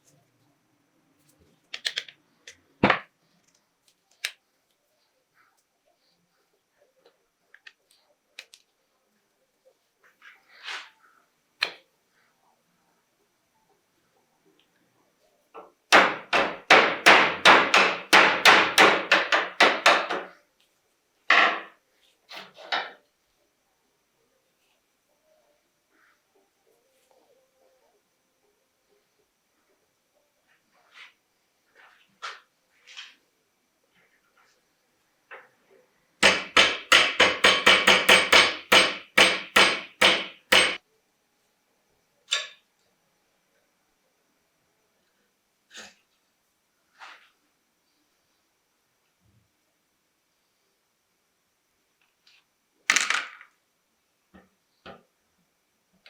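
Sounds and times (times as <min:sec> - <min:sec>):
hammer striking: 0:15.9 - 0:20.3, 0:36.2 - 0:40.8.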